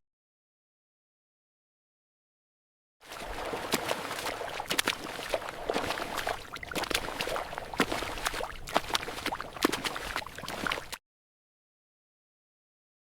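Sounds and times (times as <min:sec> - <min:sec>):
footsteps in wet mud: 0:03.1 - 0:11.0.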